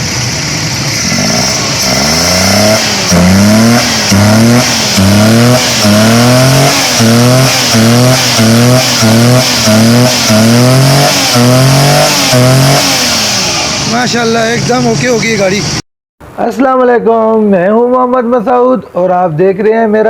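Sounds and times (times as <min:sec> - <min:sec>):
car engine revving: 0:00.0 - 0:15.8.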